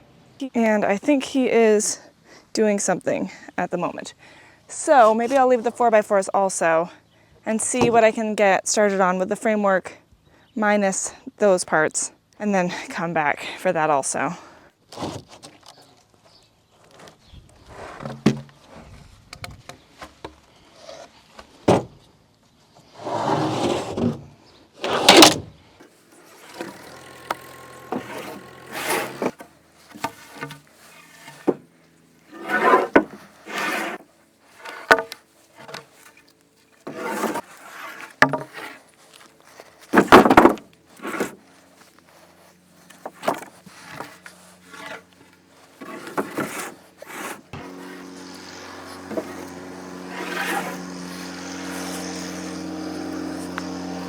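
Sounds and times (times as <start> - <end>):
wooden boards knocking and scraping: 32.4 - 34.0, 34.6 - 35.9, 38.0 - 38.8, 39.9 - 41.4, 43.0 - 45.0, 45.8 - 50.4
vehicle engine running: 47.6 - 54.0.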